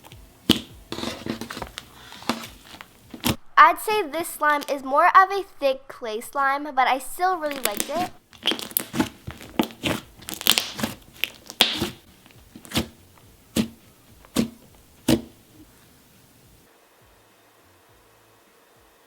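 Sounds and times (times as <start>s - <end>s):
slime squished by hand popping: 0.4s - 0.8s, 7.6s - 15.4s.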